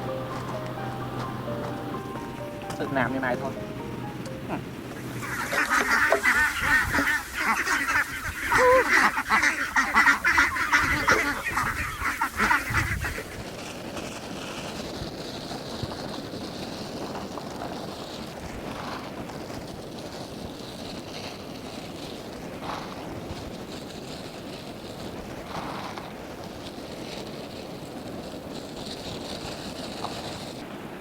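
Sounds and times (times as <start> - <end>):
steady background noise: 0.0 - 6.6
ducks quacking: 0.0 - 13.4.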